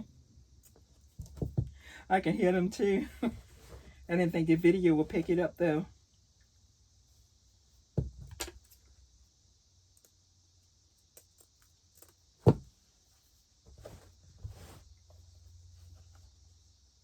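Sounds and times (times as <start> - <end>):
crickets chirring: 3.9 - 13.8, 14.8 - 17.0.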